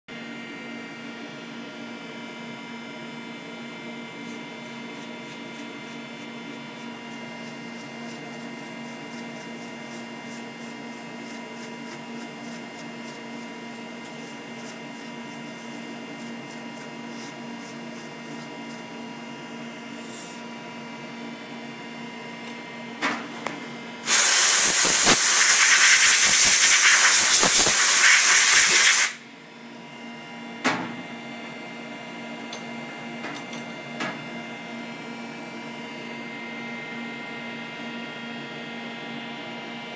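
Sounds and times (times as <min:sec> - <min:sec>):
loud hiss: 0:24.0 - 0:29.2.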